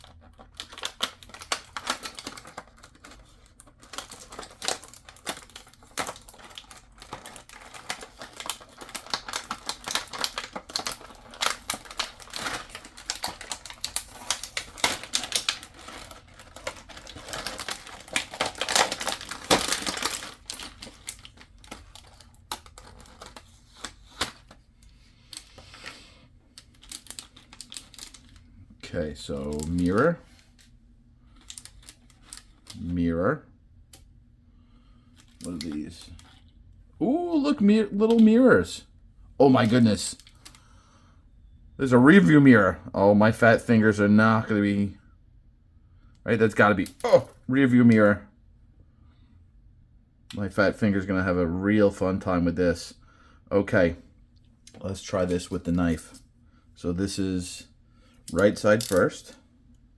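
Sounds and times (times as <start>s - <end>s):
plastic pieces clicking and rattling: 0.0s - 23.4s, 26.6s - 28.4s, 58.3s - 59.2s
packaging rustling: 0.0s - 28.5s, 29.2s - 32.9s.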